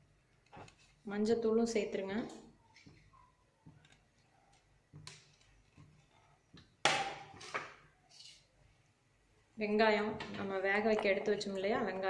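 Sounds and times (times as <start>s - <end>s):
kitchen utensils knocking and clicking: 10.1s - 11.6s.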